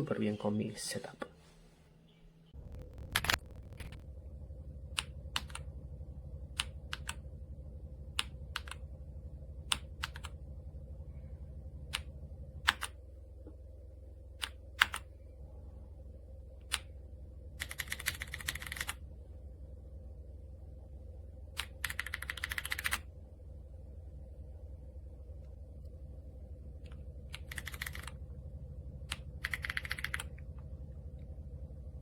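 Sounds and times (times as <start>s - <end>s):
steady low hum: 0.0s - 32.0s
rapid typing on keyboard: 2.8s - 4.0s, 17.6s - 19.0s, 21.6s - 23.0s, 27.3s - 28.1s, 29.4s - 30.3s
mechanical keyboard key clacks: 29.4s - 30.3s.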